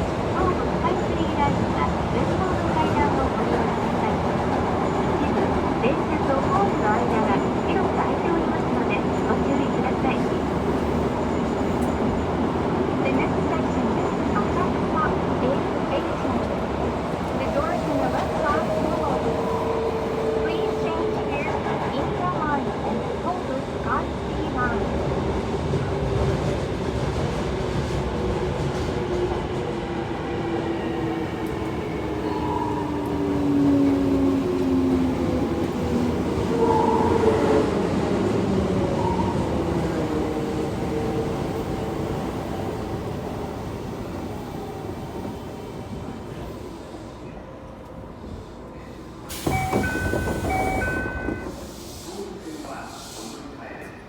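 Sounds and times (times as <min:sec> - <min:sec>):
train running noise: 0:00.0 - 0:53.3.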